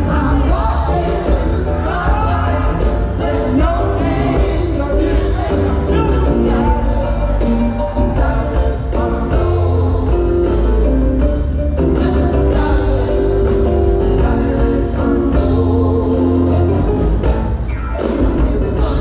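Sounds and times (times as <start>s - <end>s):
choir singing held notes: 0.0s - 10.8s
rock band playing: 0.0s - 19.0s.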